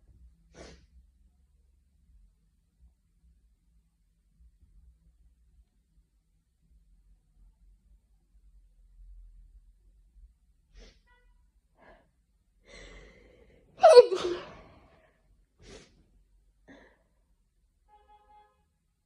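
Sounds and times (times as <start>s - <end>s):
person sneezing: 0.5s - 0.9s, 13.8s - 14.8s.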